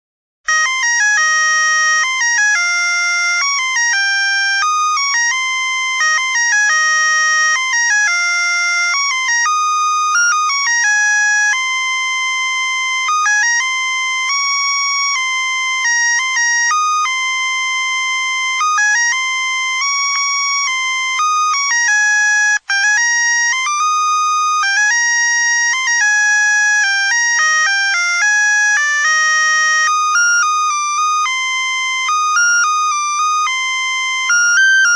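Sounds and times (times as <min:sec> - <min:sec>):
electronic beeping melody: 0:24.8 - 0:34.9.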